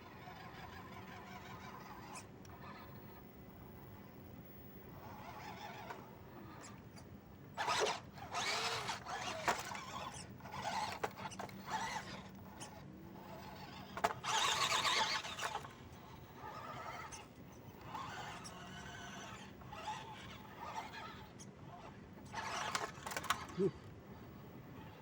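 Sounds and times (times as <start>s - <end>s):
electric motor whining: 7.6s - 23.9s.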